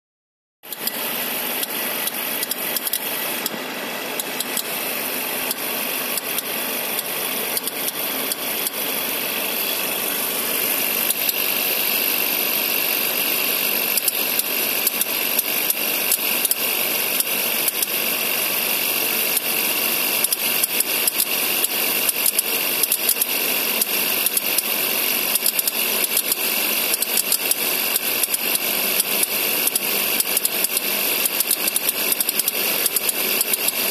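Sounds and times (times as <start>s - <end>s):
air conditioning compressor clicking: 0.7s - 9.4s.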